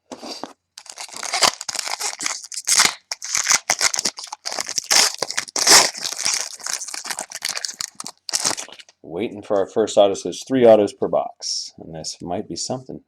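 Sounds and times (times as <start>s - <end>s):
foil wrapper crinkling and tearing: 0.2s - 8.9s.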